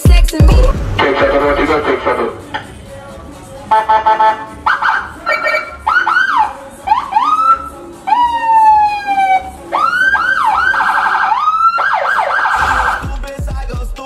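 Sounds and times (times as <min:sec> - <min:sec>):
low bass beat: 0:00.0 - 0:02.4, 0:12.6 - 0:14.0
electronic vehicle siren: 0:03.7 - 0:13.0.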